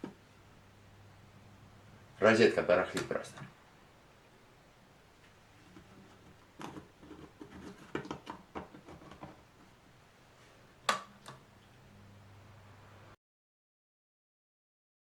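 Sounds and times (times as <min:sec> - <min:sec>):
fan motor hum: 0:00.0 - 0:13.2
light clicks and knocks: 0:05.2 - 0:09.8.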